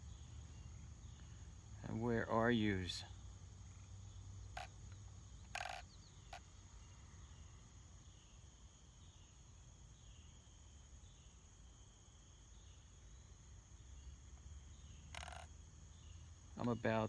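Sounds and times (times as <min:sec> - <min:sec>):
high-pitched insect drone: 0:04.4 - 0:07.0, 0:14.7 - 0:16.3.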